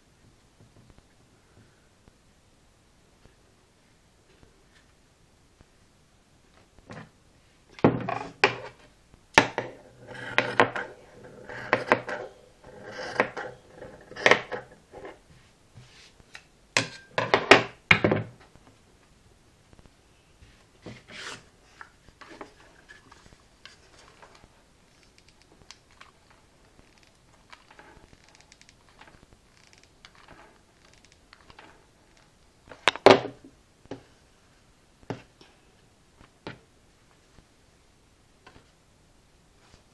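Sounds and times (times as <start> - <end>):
rubbing and scraping: 9.6 - 17.1, 20.4 - 25.1.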